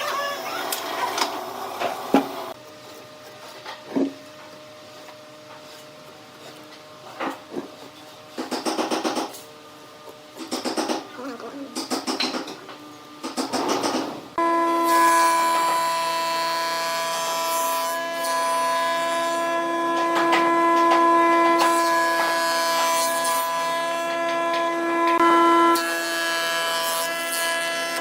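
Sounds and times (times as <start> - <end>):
turning tool scraping wood: 4.9 - 6.8
wood lathe motor whine: 14.4 - 28.0.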